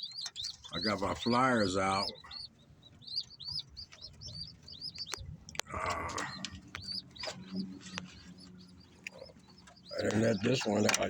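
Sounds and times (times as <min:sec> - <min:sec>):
birds chirping: 0:00.0 - 0:11.0
sharp clicks: 0:03.0 - 0:11.0.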